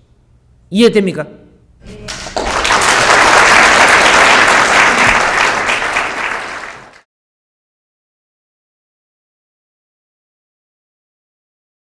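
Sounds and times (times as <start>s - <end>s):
audience applauding: 2.1s - 7.0s.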